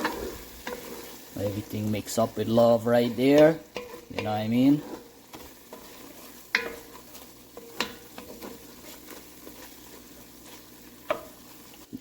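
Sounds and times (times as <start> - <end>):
faint sizzle in a pot: 0.0 - 12.0.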